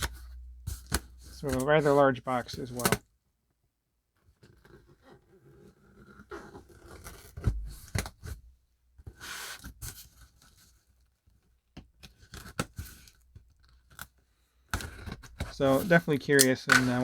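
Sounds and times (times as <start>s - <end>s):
cardboard box scraping: 4.6s - 8.3s
packing tape tearing: 14.8s - 17.0s.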